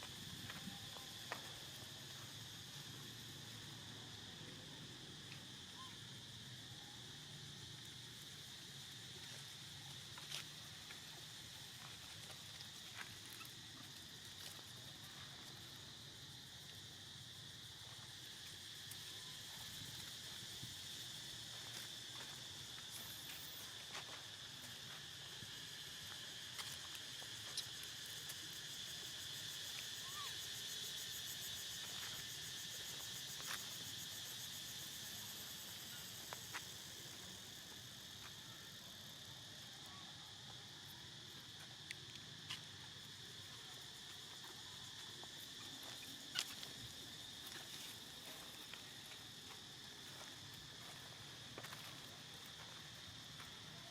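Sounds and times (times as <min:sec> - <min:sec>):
high-pitched insect chirring: 0:05.2 - 0:39.2.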